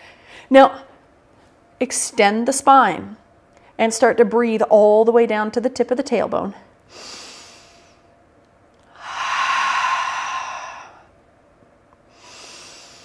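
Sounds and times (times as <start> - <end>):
woman breathing deeply: 0.0 - 0.5, 6.9 - 8.0, 8.9 - 11.2, 12.1 - 13.0.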